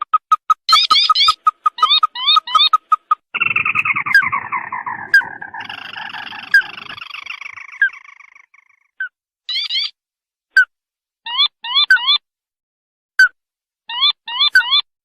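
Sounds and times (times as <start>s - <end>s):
bird piping notes: 0.1s - 8.8s
upward-sliding bird calls: 0.4s - 8.8s
falling rattling bird trill: 0.7s - 8.8s.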